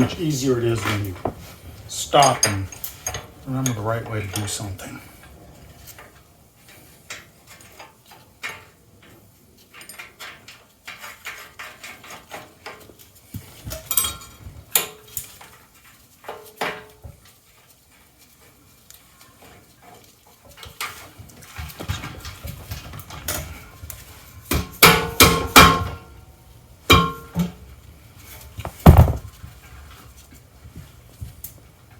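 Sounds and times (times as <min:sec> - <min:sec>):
metal tools clanking: 0:00.0 - 0:05.0.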